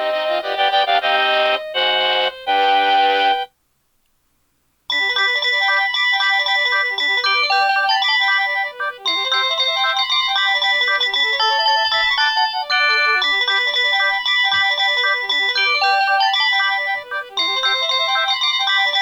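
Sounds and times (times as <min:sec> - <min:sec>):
phone ringtone beeping melody: 0:04.9 - 0:19.0.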